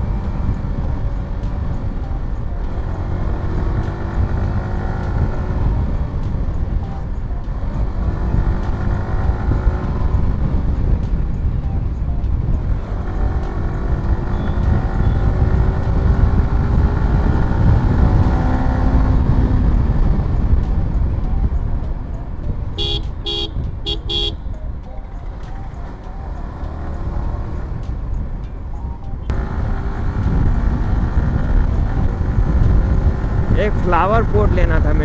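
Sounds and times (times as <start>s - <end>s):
motorcycle engine running: 0.0s - 24.6s, 25.2s - 35.0s
vehicle horn beeps: 14.2s - 15.5s, 22.8s - 24.7s
wind rush on microphone: 29.3s - 35.0s.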